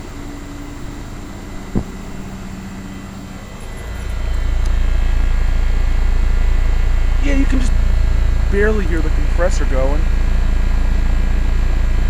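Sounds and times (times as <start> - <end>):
air conditioner humming: 0.0 - 12.0
deep low rumble: 0.3 - 9.4.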